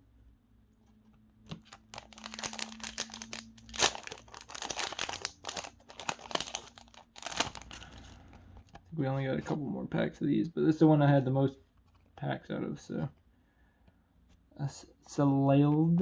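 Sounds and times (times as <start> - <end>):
foil wrapper crinkling and tearing: 1.6 - 8.2.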